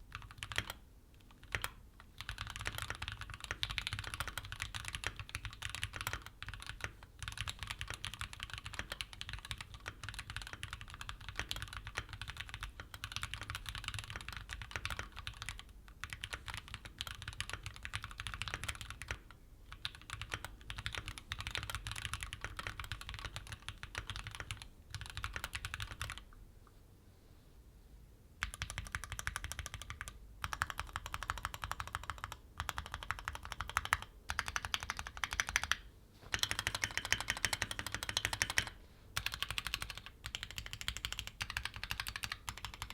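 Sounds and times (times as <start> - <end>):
mechanical keyboard typing: 0.1 - 26.3, 28.4 - 42.9.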